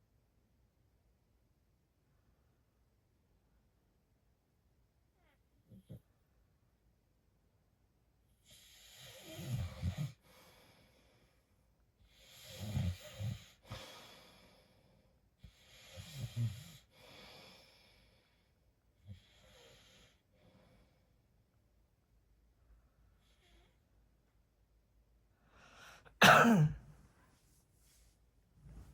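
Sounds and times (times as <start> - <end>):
man snoring: 9.0 - 10.2, 12.4 - 13.6.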